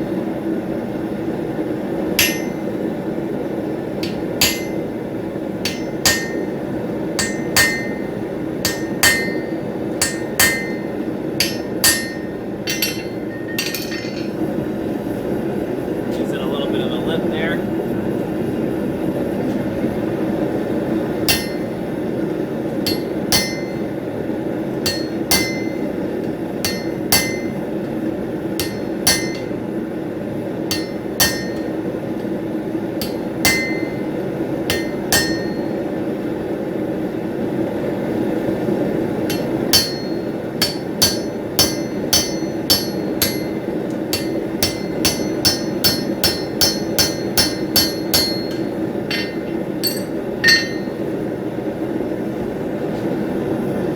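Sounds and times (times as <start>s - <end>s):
hammer striking steel on anvil: 2.2s - 3.0s, 4.0s - 14.5s, 21.2s - 22.1s, 22.8s - 29.9s, 30.6s - 32.4s, 33.0s - 36.2s, 39.2s - 51.2s.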